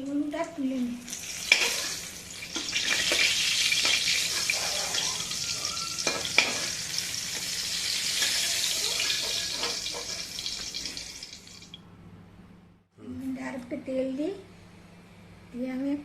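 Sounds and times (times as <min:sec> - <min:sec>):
eggplant sizzling in hot oil: 0:00.6 - 0:11.8.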